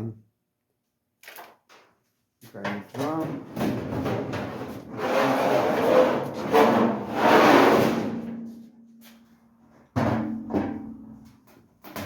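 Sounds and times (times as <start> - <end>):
metal drum scraping: 3.2 - 8.6.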